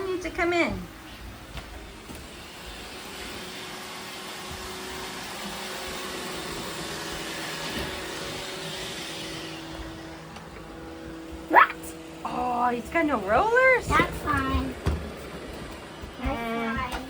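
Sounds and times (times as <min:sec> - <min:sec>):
robot vacuum whirring: 0:00.0 - 0:17.0.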